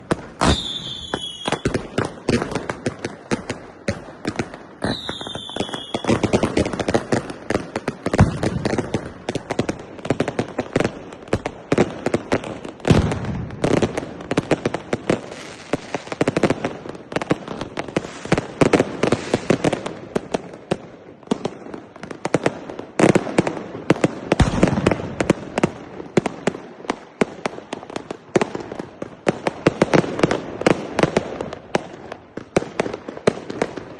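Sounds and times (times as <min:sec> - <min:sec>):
fireworks bangs and crackles: 0:00.0 - 0:33.9
falling firework whistle: 0:00.4 - 0:02.0, 0:04.8 - 0:06.4.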